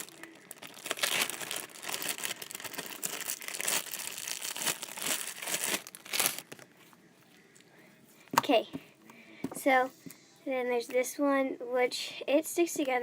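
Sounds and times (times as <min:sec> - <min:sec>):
slime crackling and popping: 0:00.0 - 0:06.5.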